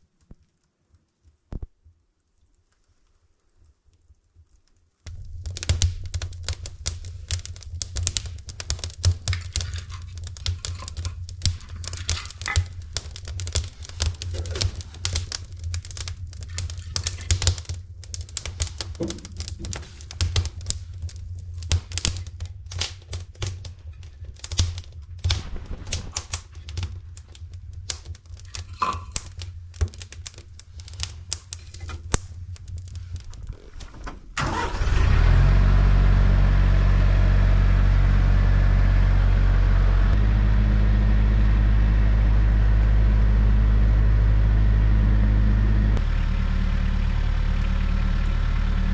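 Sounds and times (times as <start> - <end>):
rapid clicking and knocking: 5.1 - 33.3
low hum: 24.8 - 48.9
engine running with low drone: 34.4 - 48.9.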